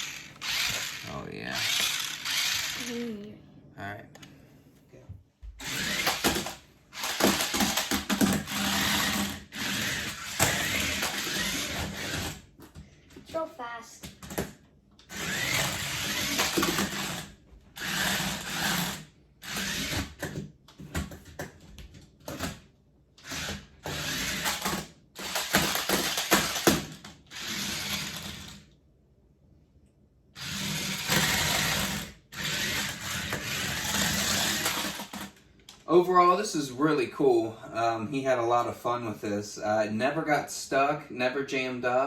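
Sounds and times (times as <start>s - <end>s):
toy car motor whirring: 0.0s - 3.3s, 5.6s - 12.6s, 15.0s - 20.4s, 23.2s - 28.7s, 30.4s - 35.4s.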